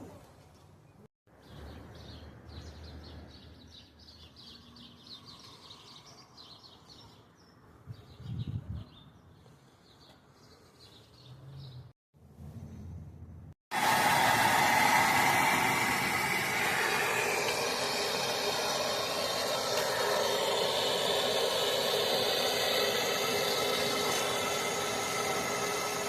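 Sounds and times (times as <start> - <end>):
small birds chirping: 1.4 - 11.9.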